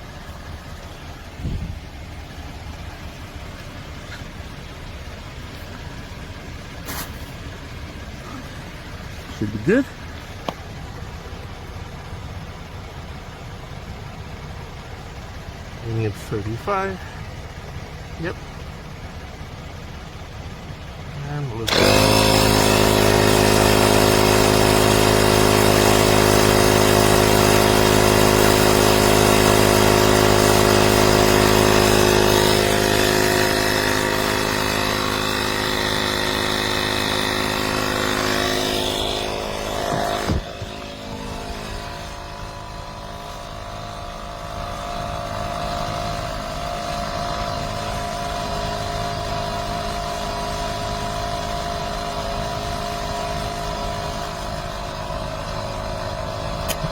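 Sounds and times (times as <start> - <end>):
tyre inflator compressor running: 0.0 - 56.9.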